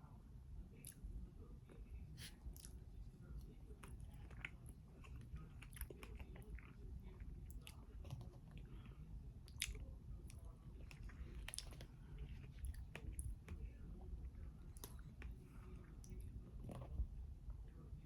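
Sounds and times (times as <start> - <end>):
person chewing: 3.8 - 6.8, 10.8 - 13.7.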